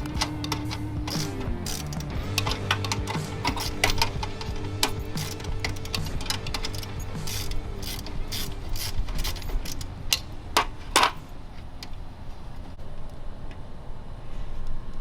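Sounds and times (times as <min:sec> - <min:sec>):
ratchet wrench ratcheting: 0:00.0 - 0:11.3.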